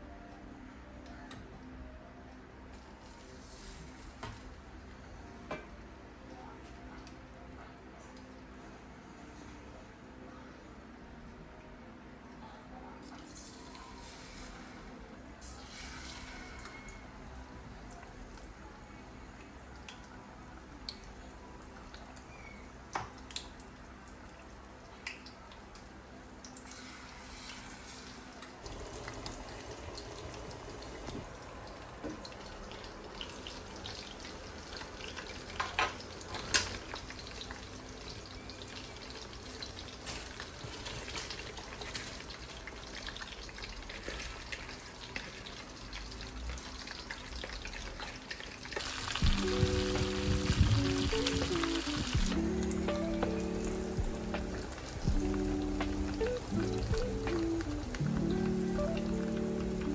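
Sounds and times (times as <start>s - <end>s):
steady hiss with crackles: 48.5s - 59.9s.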